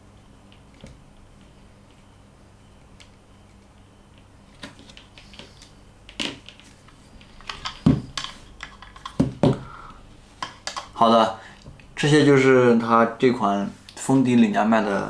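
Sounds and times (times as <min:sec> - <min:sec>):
microphone handling thumps: 0:07.8 - 0:08.2, 0:09.2 - 0:09.8.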